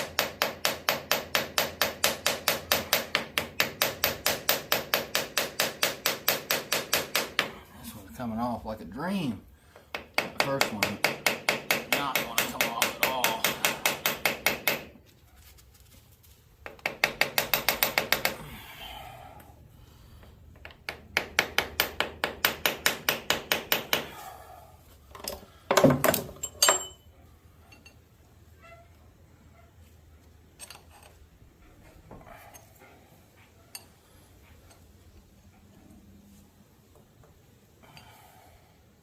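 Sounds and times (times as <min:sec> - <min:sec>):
hammer striking metal: 0:09.9 - 0:14.9
light metal clinks: 0:26.3 - 0:28.0.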